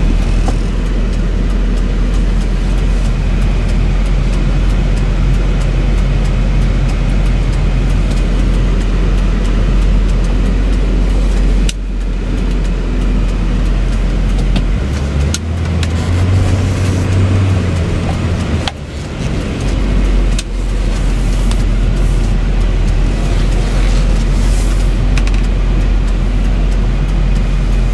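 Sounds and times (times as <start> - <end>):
diesel truck engine running: 0.0 - 27.9
road noise: 0.0 - 27.9.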